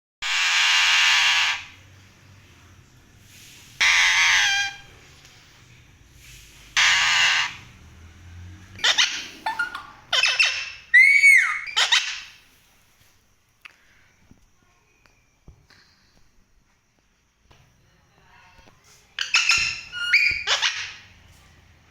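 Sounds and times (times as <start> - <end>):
parrot squawking and whistling: 0.2 - 1.7, 3.8 - 4.9, 6.8 - 7.6, 8.8 - 12.3, 19.2 - 21.0.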